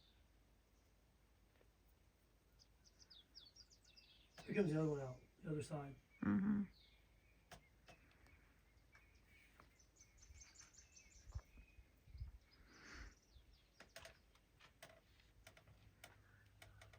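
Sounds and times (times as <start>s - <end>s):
soft high bird chirps: 2.4s - 14.4s
small clicks: 7.5s - 8.4s, 13.7s - 16.9s.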